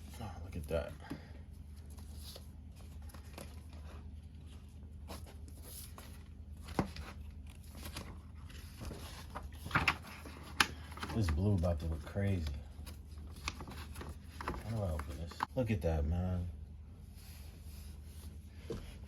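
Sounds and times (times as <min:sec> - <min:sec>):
steady low hum: 0:00.0 - 0:19.0
record sleeve rustling and tapping: 0:05.2 - 0:15.5.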